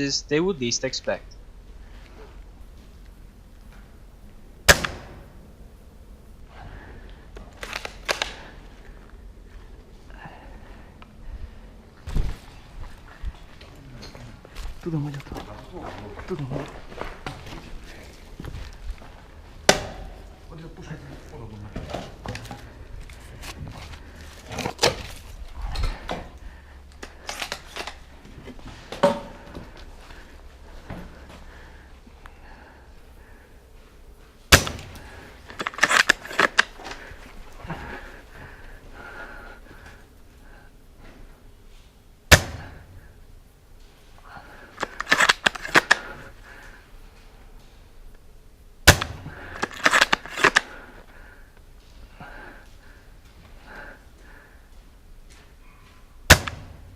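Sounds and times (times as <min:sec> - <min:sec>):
airsoft gunshots: 0:04.7 - 0:05.3, 0:34.5 - 0:35.0, 0:42.3 - 0:42.8, 0:48.9 - 0:50.0, 0:56.3 - 0:56.9
rustling: 0:11.4 - 0:56.9.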